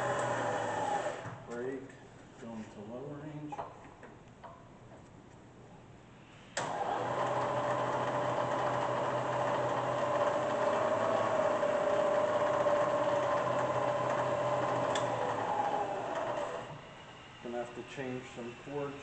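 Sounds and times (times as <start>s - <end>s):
milling machine spindle whining: 6.6s - 19.0s.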